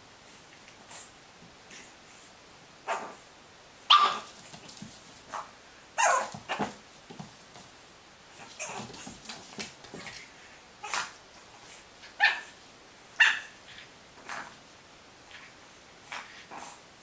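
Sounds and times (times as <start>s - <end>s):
dog barking: 3.9s - 4.3s, 6.0s - 6.3s, 13.2s - 13.5s.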